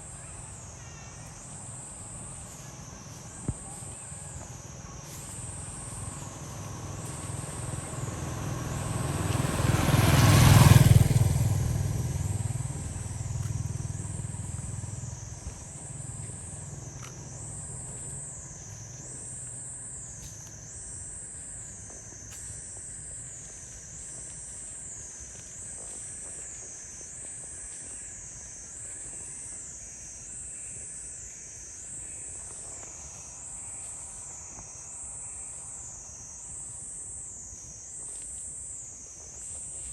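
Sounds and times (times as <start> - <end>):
insects chirping: 0.0 - 39.9
vehicle engine passing: 5.0 - 19.8.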